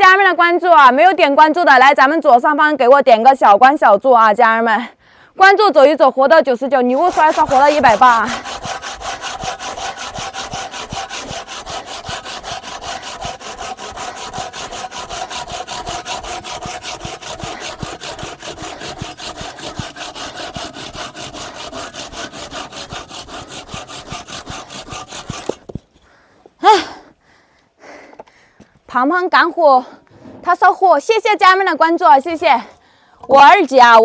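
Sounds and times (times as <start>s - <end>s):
hand saw cutting wood: 6.9s - 26.1s.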